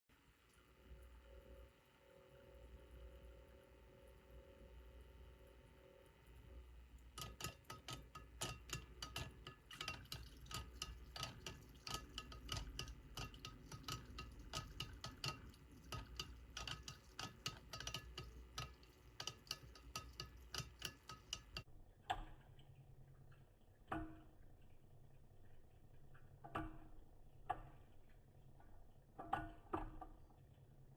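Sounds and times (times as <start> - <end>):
rapid irregular clicking: 6.9 - 21.7.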